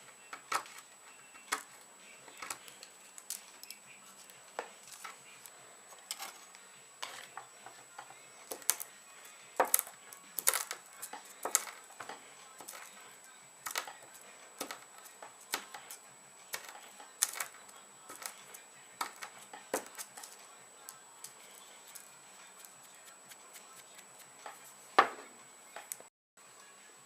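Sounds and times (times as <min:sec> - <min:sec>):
hard objects clicking: 0:07.0 - 0:08.9, 0:09.6 - 0:12.9, 0:13.6 - 0:22.8.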